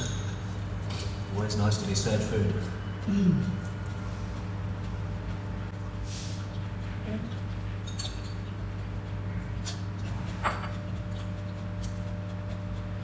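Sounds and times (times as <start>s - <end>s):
tableware clinking: 0.0s - 1.2s, 7.8s - 8.5s, 10.4s - 10.9s.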